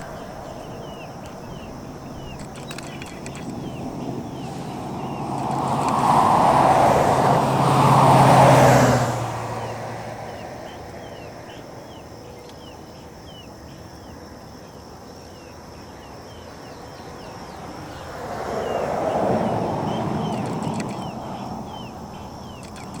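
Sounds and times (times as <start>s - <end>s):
car passing: 0.0s - 12.2s, 16.7s - 23.0s
short chirping calls: 19.5s - 23.0s.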